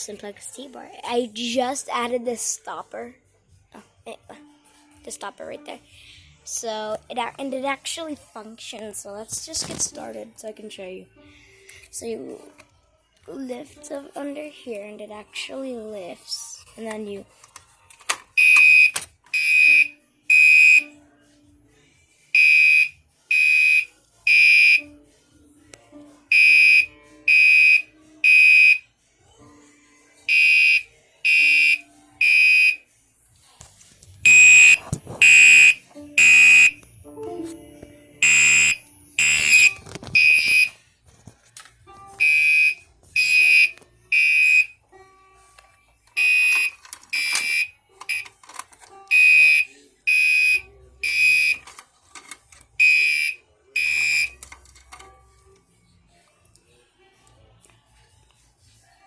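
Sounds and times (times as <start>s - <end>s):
fire alarm horn blasts: 18.4s - 20.9s, 26.3s - 28.8s, 30.3s - 32.8s, 34.3s - 36.8s, 38.2s - 40.7s, 42.2s - 44.7s, 46.2s - 48.3s, 52.8s - 54.3s.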